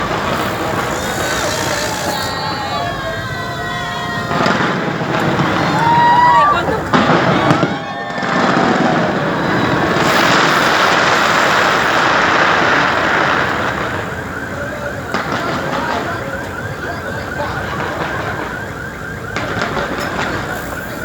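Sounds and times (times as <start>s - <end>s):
fireworks rushing noise: 0.0s - 21.0s
rising firework chirps: 0.0s - 21.0s.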